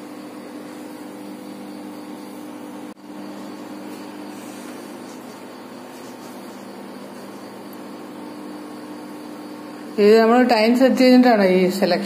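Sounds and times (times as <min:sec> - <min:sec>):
microwave oven humming: 0:00.0 - 0:12.0.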